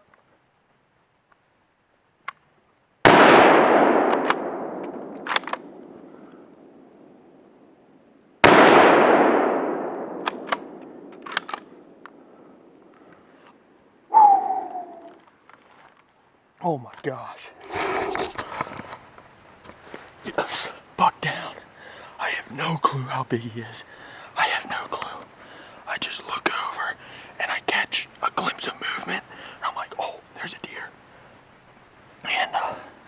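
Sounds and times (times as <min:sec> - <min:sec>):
rifle shots with rolling echo: 0:03.0 - 0:13.4
short sharp clicks: 0:04.0 - 0:05.9, 0:08.5 - 0:12.2.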